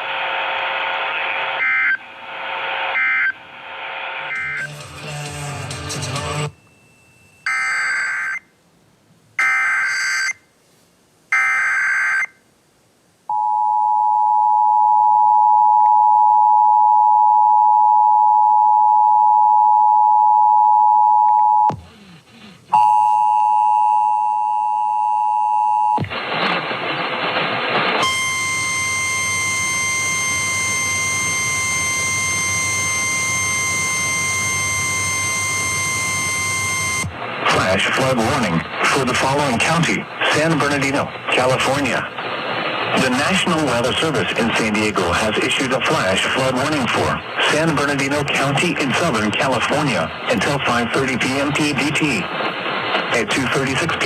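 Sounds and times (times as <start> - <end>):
steady warning tone: 28.0 - 42.2.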